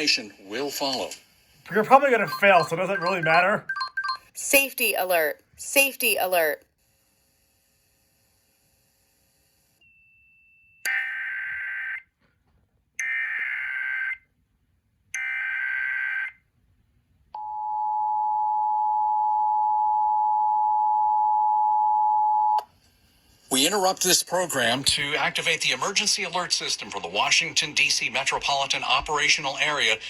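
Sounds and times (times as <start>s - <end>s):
two-tone attention signal: 2.2s - 4.2s.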